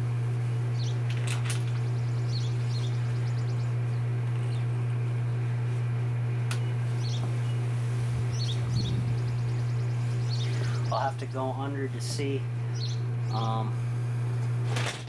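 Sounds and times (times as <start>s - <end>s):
steady low hum: 0.0s - 15.0s
bird chirps: 0.8s - 1.0s, 1.6s - 4.7s, 6.5s - 11.2s, 12.6s - 13.6s.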